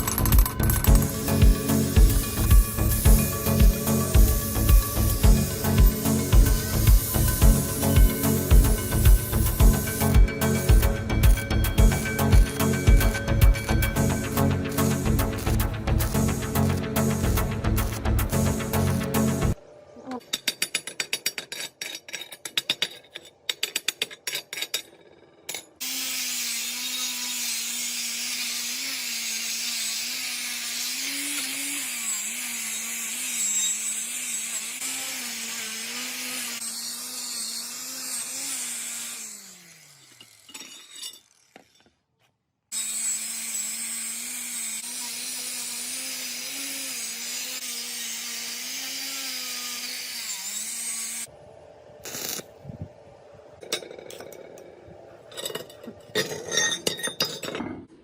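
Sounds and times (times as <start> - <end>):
electric power tool running: 0.0 - 19.6, 25.8 - 41.9, 42.7 - 52.7.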